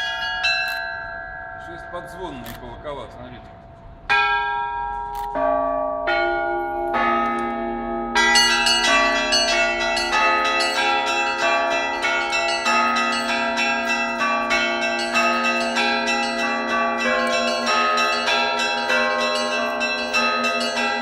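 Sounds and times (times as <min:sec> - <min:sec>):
low church bells ringing: 0:00.0 - 0:21.0
small high bells struck rapidly: 0:08.2 - 0:21.0.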